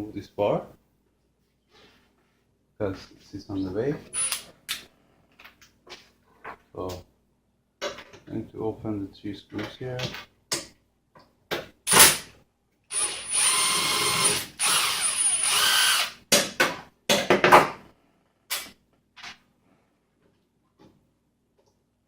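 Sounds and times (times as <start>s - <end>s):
electric screwdriver whining: 12.9s - 16.2s.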